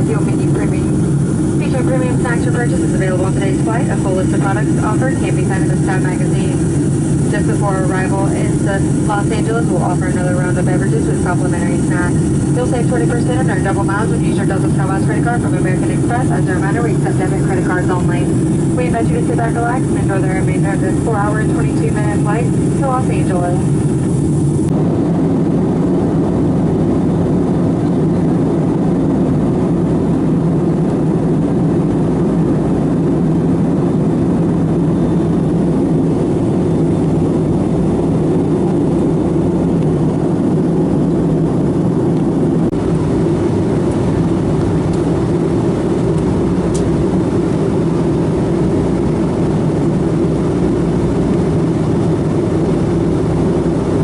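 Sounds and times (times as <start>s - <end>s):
airplane cabin drone: 0.0s - 54.0s.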